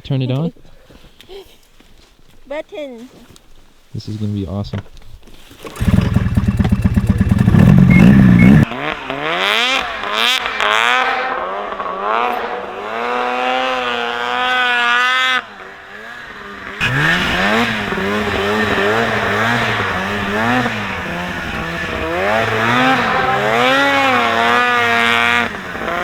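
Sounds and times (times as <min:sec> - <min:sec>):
snowmobile engine revving: 0:05.6 - 0:26.0.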